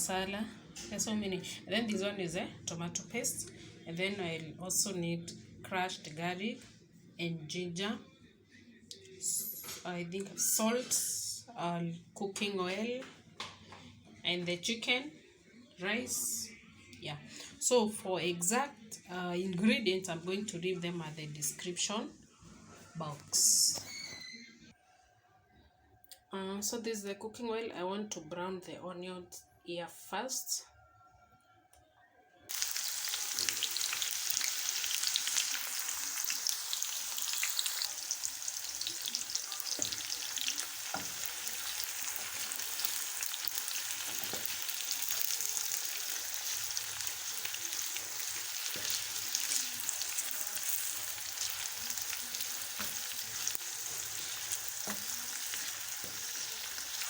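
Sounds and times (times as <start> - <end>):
onions sizzling in oil: 32.5 - 57.0
knocks of stirring in pan: 36.3 - 57.0.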